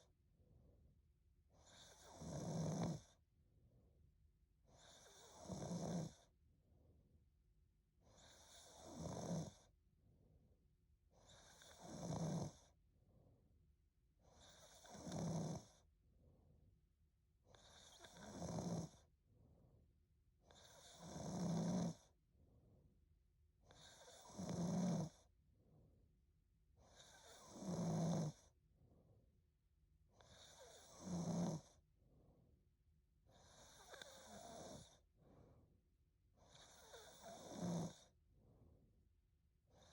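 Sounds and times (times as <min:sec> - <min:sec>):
woman snoring: 0:01.7 - 0:03.1, 0:04.8 - 0:06.2, 0:08.2 - 0:09.6, 0:11.3 - 0:12.6, 0:14.4 - 0:15.8, 0:17.6 - 0:19.0, 0:20.5 - 0:22.0, 0:23.7 - 0:25.2, 0:26.9 - 0:28.4, 0:30.2 - 0:31.7, 0:33.4 - 0:35.0, 0:36.5 - 0:38.1
soft breathing: 0:33.8 - 0:35.8.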